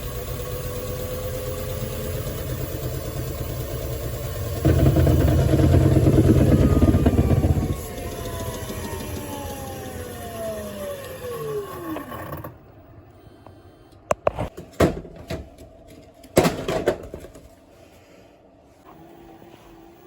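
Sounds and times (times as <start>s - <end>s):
washing machine motor whine: 0.0s - 13.0s.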